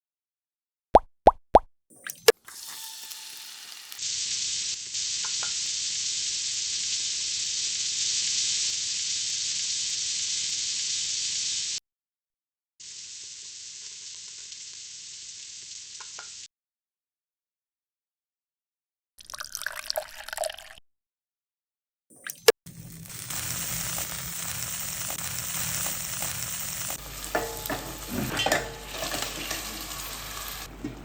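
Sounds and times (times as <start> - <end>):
food sizzling in hot oil: 2.3 - 11.8, 12.8 - 16.5, 22.7 - 30.7.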